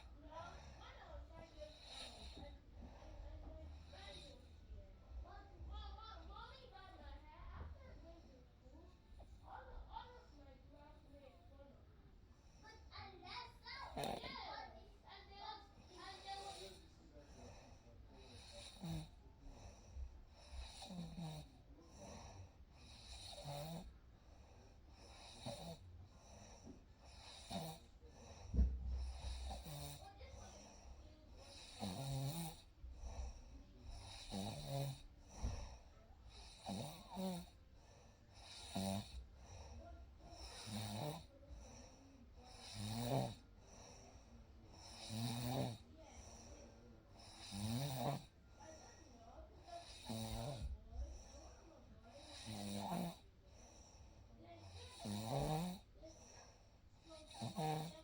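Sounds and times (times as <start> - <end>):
person snoring: 1.8 - 2.5, 27.1 - 27.9, 29.0 - 30.0, 31.4 - 32.6, 33.2 - 35.6, 36.3 - 37.5, 38.4 - 39.2, 40.4 - 41.3, 42.5 - 43.4, 44.8 - 45.8, 47.2 - 48.3, 49.8 - 50.7, 52.2 - 53.2, 54.7 - 55.8, 57.3 - 58.0.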